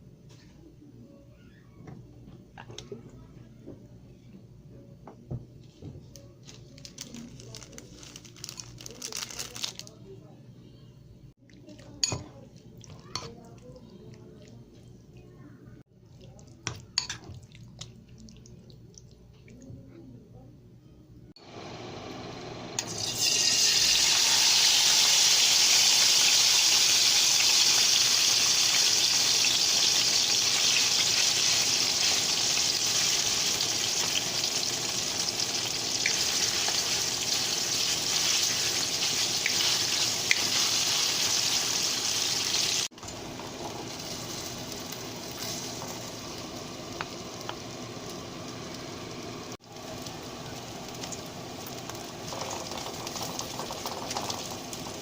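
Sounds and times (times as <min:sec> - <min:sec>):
food sizzling in hot oil: 0:21.5 - 0:55.0.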